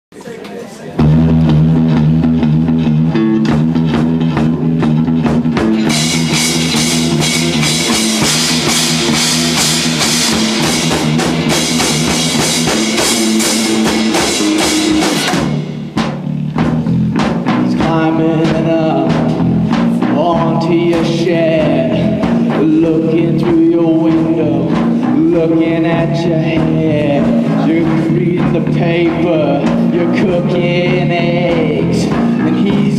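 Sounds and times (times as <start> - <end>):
punk band playing live: 0.1 - 32.9
bending melodic guitar line: 0.4 - 32.9
drum kit: 0.9 - 32.9
cymbals crashing: 5.9 - 16.0.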